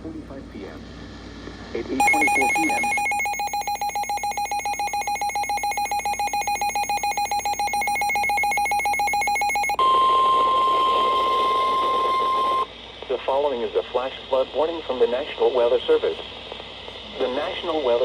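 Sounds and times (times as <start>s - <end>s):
pulsing electronic alert tone: 2.0s - 9.9s
steady alarm tone: 2.0s - 12.7s
radio hiss: 13.0s - 18.0s.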